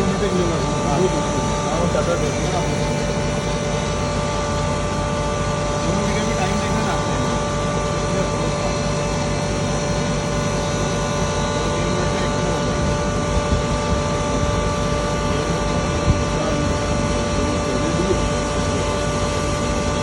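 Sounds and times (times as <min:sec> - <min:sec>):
grinder running: 0:00.0 - 0:20.0.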